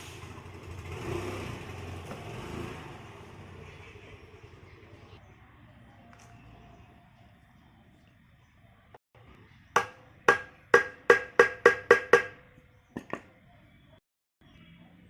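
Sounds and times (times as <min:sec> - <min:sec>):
hammer tapping on metal: 0:09.8 - 0:12.4.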